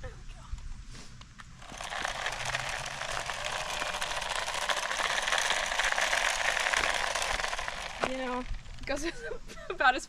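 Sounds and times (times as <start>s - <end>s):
toy car electric motor whirring: 1.6s - 9.2s.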